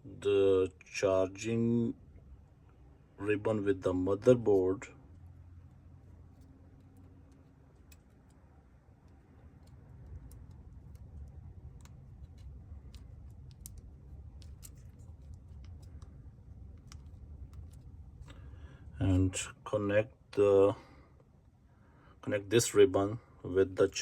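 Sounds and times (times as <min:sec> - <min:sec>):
low steady hum: 0:00.0 - 0:24.0
small clicks and taps: 0:05.1 - 0:18.5.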